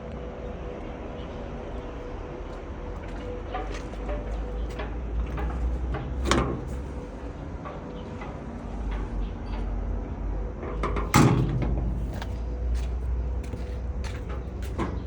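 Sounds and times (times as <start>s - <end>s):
steady low rumble: 0.0s - 15.0s
metal doors clunking shut: 3.6s - 8.4s, 10.6s - 12.8s, 14.0s - 15.0s.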